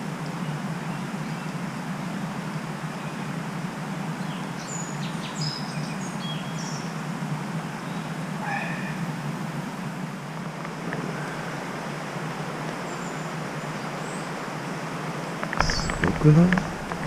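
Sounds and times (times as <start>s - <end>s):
small birds chirping: 15.4s - 17.0s.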